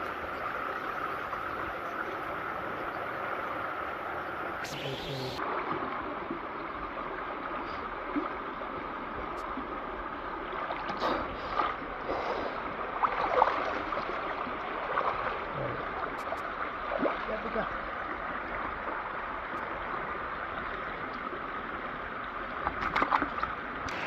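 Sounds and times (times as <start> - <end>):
running water rushing: 0.0 - 24.0
small splashes or knocks: 22.6 - 23.6.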